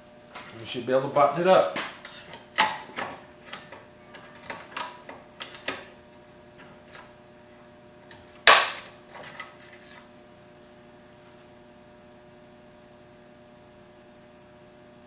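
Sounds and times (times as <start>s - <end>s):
sharp knock: 8.5s - 8.9s.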